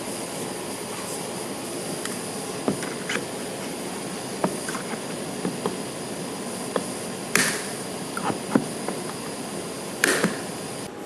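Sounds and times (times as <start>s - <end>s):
steady hiss: 0.0s - 11.0s
hot stapler clicks and taps: 2.0s - 10.9s
sharp snap: 6.7s - 9.4s, 10.0s - 10.6s.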